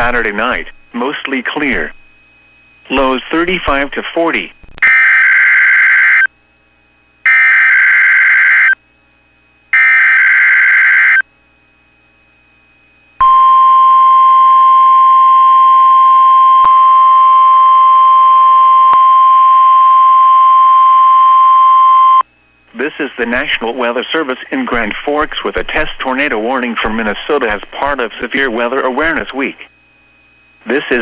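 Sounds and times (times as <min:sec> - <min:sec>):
steady warning alarm tone: 0:04.8 - 0:06.3, 0:07.3 - 0:08.8, 0:09.7 - 0:11.2, 0:13.2 - 0:22.2.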